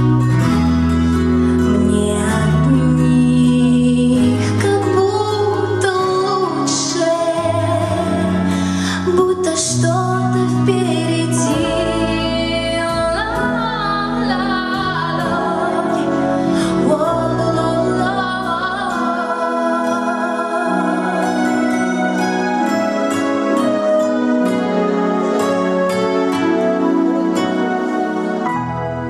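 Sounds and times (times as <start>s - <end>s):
instrumental accompaniment: 0.0s - 29.0s
woman singing pop song: 1.5s - 22.3s.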